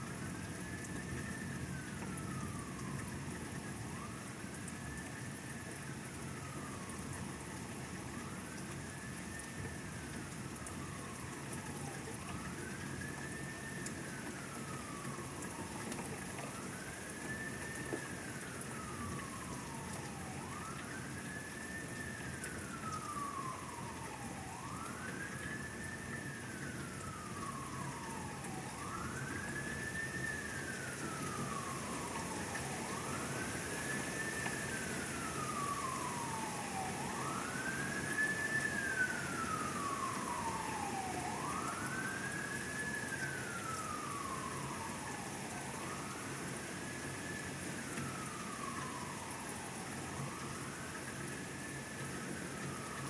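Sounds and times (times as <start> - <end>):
siren wailing: 0.0 - 53.0
steady rain falling: 0.0 - 53.0.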